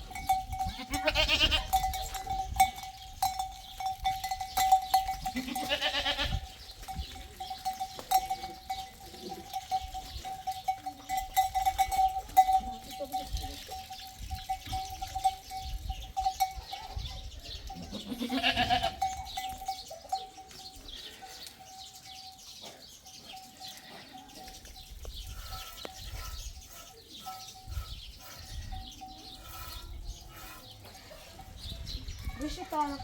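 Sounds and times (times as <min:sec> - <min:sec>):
animal bells ringing: 0:00.0 - 0:33.0
animal bleating: 0:00.7 - 0:01.9, 0:05.3 - 0:06.5, 0:17.8 - 0:19.1.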